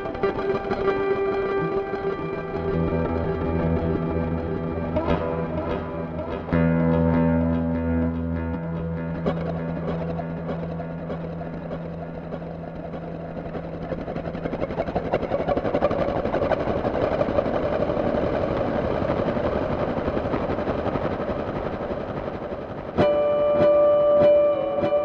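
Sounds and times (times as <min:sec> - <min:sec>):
guitar chord ringing: 0:00.0 - 0:17.8, 0:23.0 - 0:25.0
fluttering rumble: 0:00.0 - 0:23.2.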